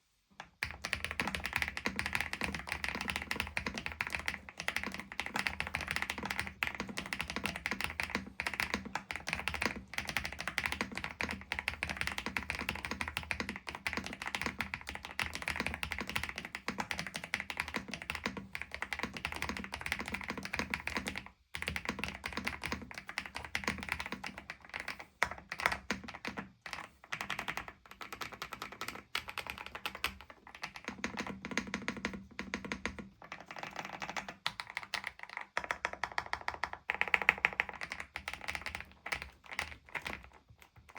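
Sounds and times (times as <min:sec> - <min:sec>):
mechanical keyboard typing: 0:00.6 - 0:40.9.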